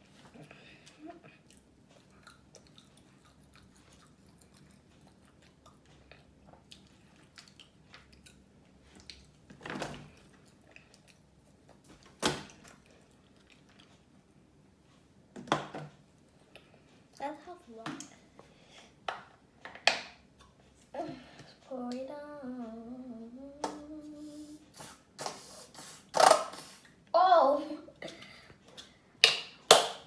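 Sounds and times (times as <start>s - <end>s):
person chewing: 0.8s - 9.4s, 10.2s - 11.9s, 12.7s - 14.1s.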